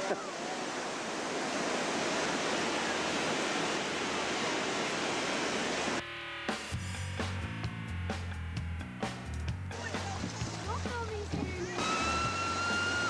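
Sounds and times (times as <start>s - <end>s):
river whitewater rushing: 0.0s - 6.0s, 9.8s - 13.0s
music: 6.0s - 13.0s.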